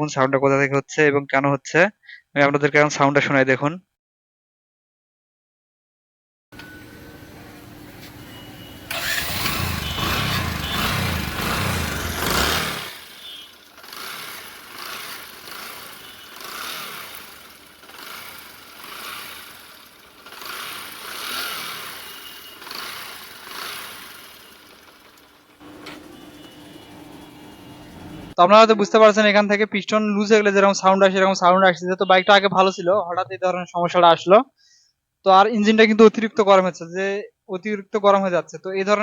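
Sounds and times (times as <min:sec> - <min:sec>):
engine knocking noise: 0:08.9 - 0:26.5
motorcycle engine running: 0:08.9 - 0:28.4.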